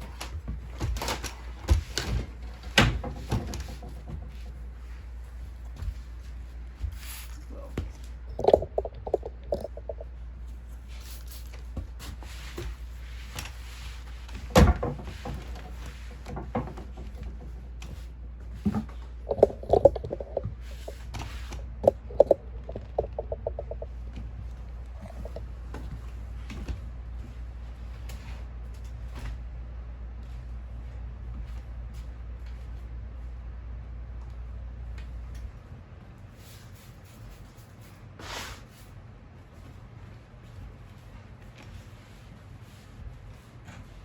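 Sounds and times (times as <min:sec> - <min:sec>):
steady low hum: 0:00.0 - 0:44.0
knocks and clicks of objects handled: 0:00.1 - 0:04.8, 0:07.8 - 0:10.1, 0:11.8 - 0:24.3.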